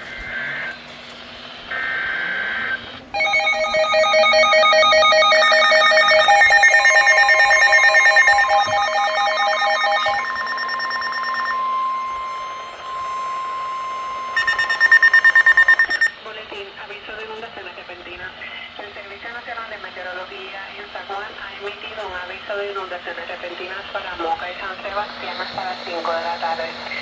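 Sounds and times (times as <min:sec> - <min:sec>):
data-burst tone: 0:03.2 - 0:16.2
rapid pulsed beeping: 0:03.2 - 0:16.2
steady attention tone: 0:03.2 - 0:16.2
warbling alert tones: 0:03.2 - 0:16.2.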